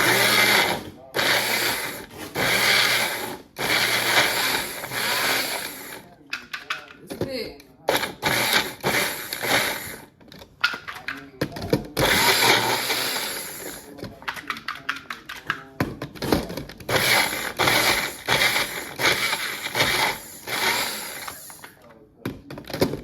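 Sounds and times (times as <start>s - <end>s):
electric blender running: 0.0s - 6.0s, 7.9s - 10.1s, 12.0s - 13.9s, 16.9s - 21.6s.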